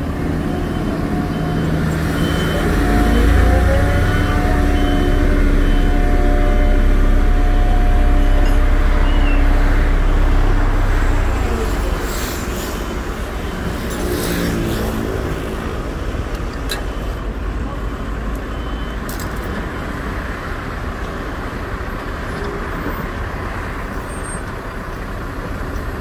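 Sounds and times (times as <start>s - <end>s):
whining tones: 0.0s - 17.2s
diesel machinery engine rumble: 0.0s - 26.0s.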